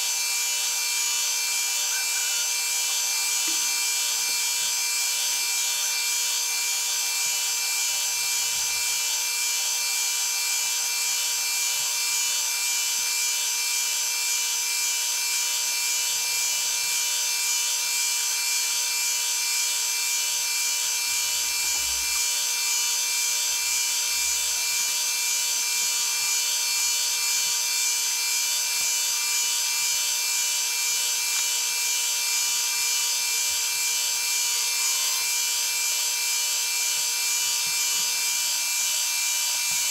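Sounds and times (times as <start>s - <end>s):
milling machine whining: 0.0s - 12.0s, 20.2s - 39.9s.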